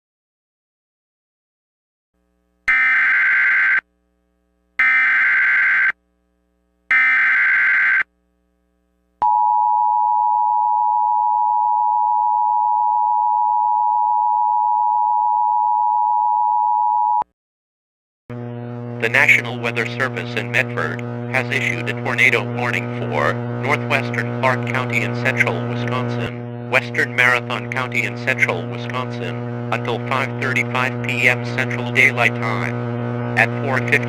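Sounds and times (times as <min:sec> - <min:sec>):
steady dual tone: 0:18.3 - 0:34.0
harsh digital warble: 0:19.0 - 0:34.0.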